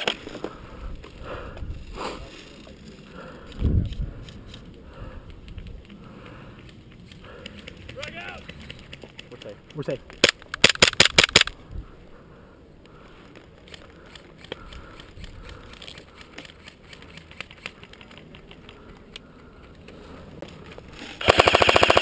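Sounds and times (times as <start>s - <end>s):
airsoft gun full-auto burst: 21.2s - 22.0s.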